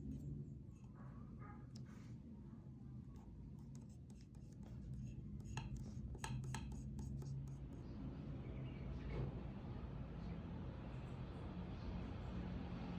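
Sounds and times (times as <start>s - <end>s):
pen scratching on paper: 3.6s - 7.8s.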